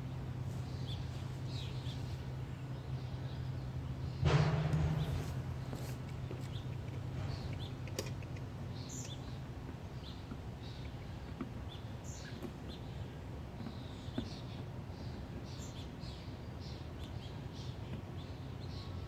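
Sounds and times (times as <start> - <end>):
steady low hum: 0.0 - 15.0
small bird chirping: 5.8 - 9.4.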